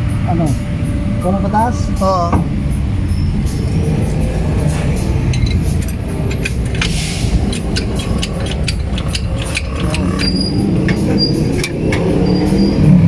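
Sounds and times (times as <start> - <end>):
steady low rumble: 0.0 - 13.0
socket wrench and tools clicking: 5.3 - 12.9.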